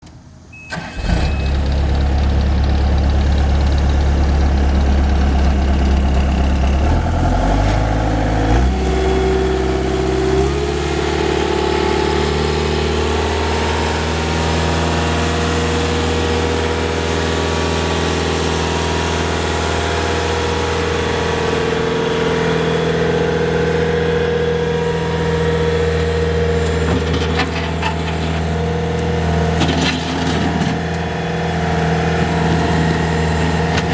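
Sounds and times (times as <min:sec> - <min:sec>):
short beep: 0:00.5 - 0:01.7
diesel engine running: 0:00.7 - 0:33.9.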